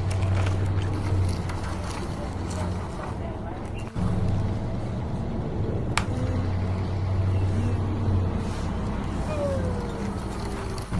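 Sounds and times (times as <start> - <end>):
rc truck low drone: 4.0 - 10.9.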